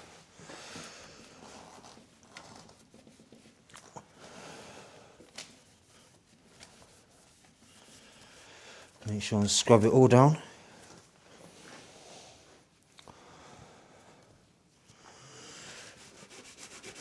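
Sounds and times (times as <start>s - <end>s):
cloth rubbing bicycle frame: 1.2s - 3.7s, 5.2s - 8.5s, 15.7s - 17.0s.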